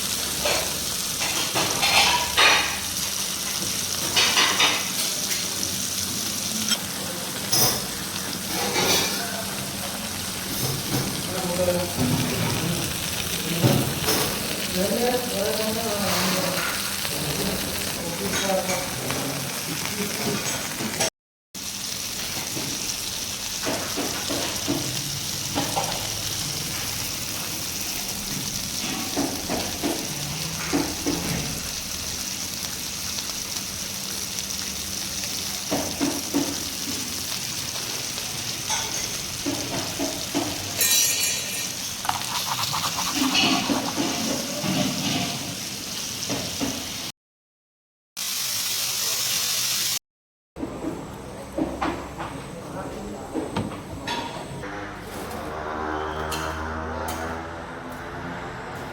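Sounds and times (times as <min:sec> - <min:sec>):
fish sizzling in oil: 0:00.0 - 0:47.1, 0:48.2 - 0:50.0
scrapes and knocks: 0:41.6 - 0:45.1.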